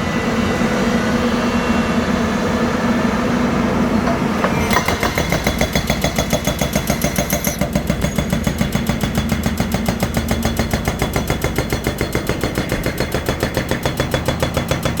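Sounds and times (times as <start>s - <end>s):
excavator engine running: 2.7s - 15.0s
hydraulic rock breaker hammering: 3.9s - 15.0s.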